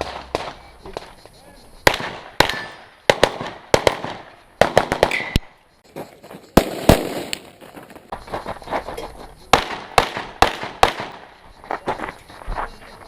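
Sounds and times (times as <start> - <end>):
handgun shots with echo: 1.9 - 5.5.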